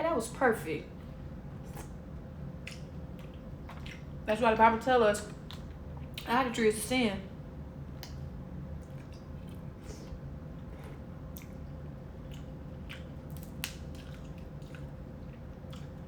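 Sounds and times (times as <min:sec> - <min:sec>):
steady low hum: 0:00.0 - 0:16.0
chewing: 0:02.6 - 0:04.1, 0:08.8 - 0:16.0.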